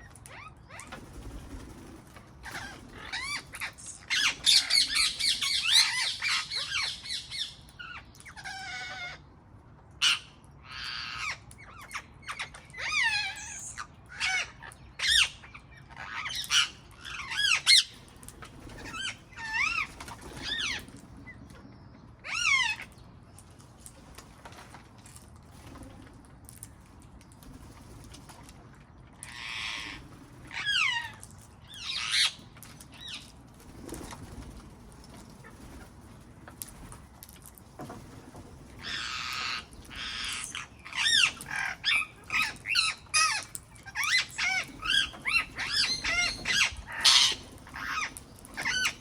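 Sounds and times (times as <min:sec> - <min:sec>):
parrots calling: 0:02.4 - 0:09.2, 0:10.0 - 0:20.9, 0:22.2 - 0:23.0, 0:29.2 - 0:33.3, 0:38.8 - 0:49.0.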